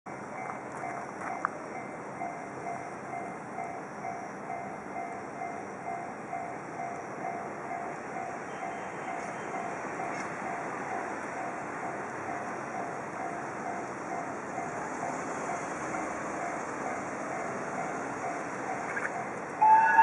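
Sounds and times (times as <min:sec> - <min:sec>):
railway rushing noise: 0:00.1 - 0:20.0
level crossing alarm dinging: 0:16.4 - 0:20.0.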